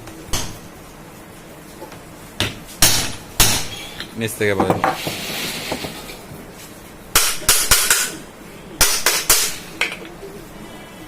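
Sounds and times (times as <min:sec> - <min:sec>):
hammer knocking on metal parts: 0:02.4 - 0:03.8, 0:07.2 - 0:08.2.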